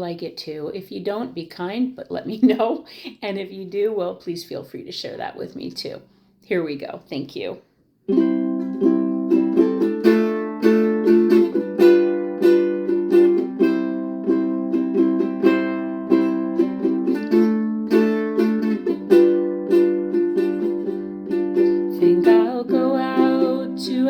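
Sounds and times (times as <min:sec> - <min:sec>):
ukulele strumming chords: 0:08.1 - 0:24.0.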